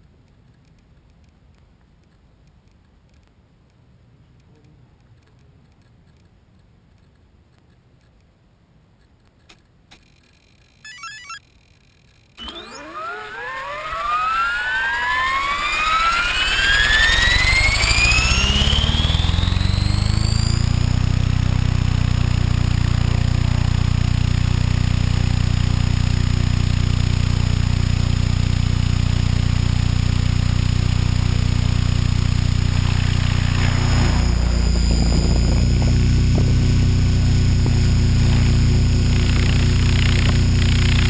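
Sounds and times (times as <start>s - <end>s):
low rotor hum: 12.4s - 41.0s
rc helicopter motor whine: 12.4s - 41.0s.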